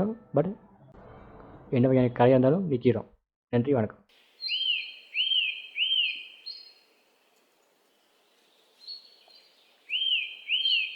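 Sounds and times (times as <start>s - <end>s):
faint high bird calls: 4.3s - 7.0s, 8.0s - 10.9s
bird chirps: 4.3s - 7.1s, 7.9s - 10.9s.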